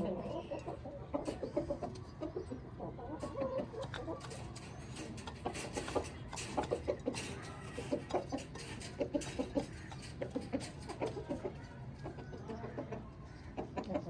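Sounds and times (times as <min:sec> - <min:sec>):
chickens clucking: 0:00.0 - 0:14.0.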